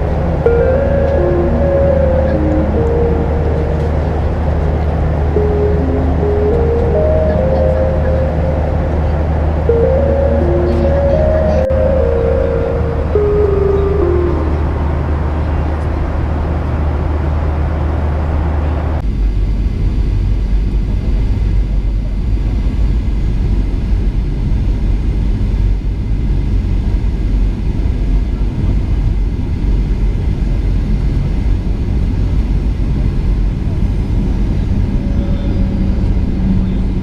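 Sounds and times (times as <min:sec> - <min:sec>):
full bright noise: 0:00.0 - 0:18.6
airplane cabin rumble: 0:00.0 - 0:37.0.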